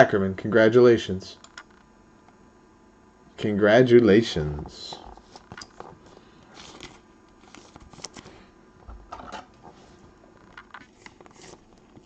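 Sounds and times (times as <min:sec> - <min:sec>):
cards and packaging rustling: 0:04.9 - 0:08.5, 0:10.5 - 0:12.0.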